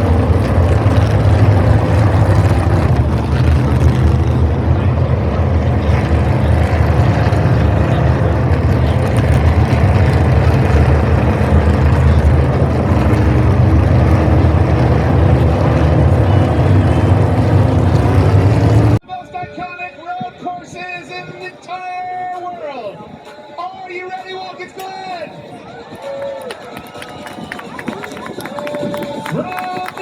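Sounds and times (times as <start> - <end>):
race car engines running: 0.0 - 19.0.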